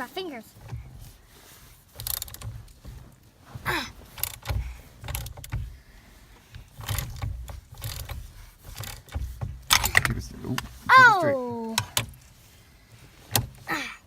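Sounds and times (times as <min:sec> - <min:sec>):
wrench clicking and clinking: 0:06.8 - 0:10.2.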